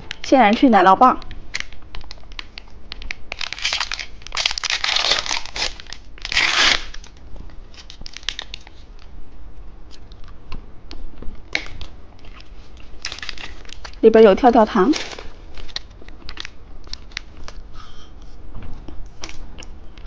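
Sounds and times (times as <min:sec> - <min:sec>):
small clicks and crackles: 0:01.2 - 0:06.0
plastic wrapper tearing and crinkling: 0:01.5 - 0:09.1, 0:11.5 - 0:17.6.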